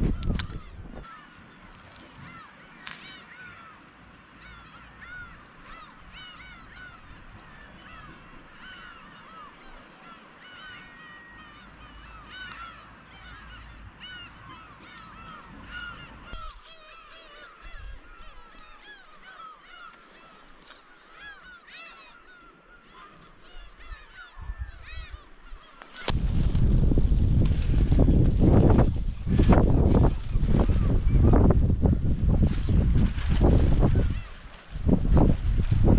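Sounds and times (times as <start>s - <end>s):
wind noise on microphone: 0.0s - 1.1s, 26.0s - 35.9s
flock of birds calling: 0.0s - 26.2s, 27.9s - 35.9s.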